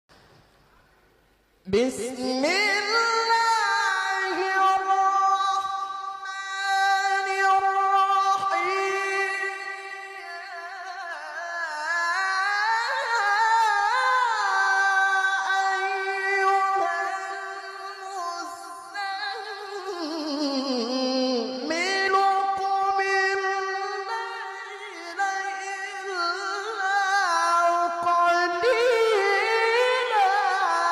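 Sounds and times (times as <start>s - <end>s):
person chanting recitation: 1.6s - 30.9s.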